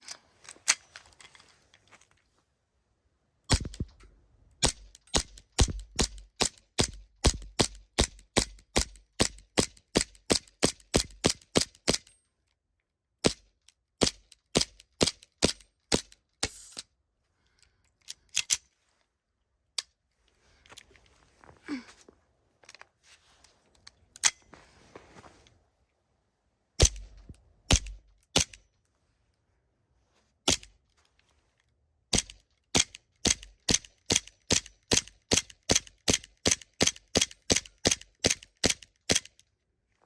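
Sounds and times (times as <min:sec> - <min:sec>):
airsoft pistol shots: 0:03.5 - 0:03.9, 0:26.8 - 0:28.6
pistol slide cycling: 0:18.0 - 0:18.7, 0:26.8 - 0:28.6.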